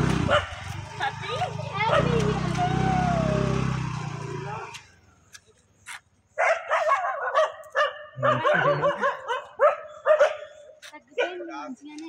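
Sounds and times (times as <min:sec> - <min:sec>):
dog yelping and barking: 0:06.4 - 0:11.4.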